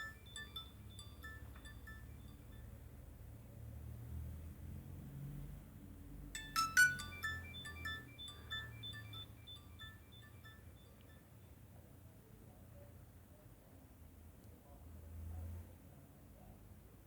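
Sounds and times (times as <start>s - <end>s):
mobile phone ringtone beeps: 6.4s - 10.8s.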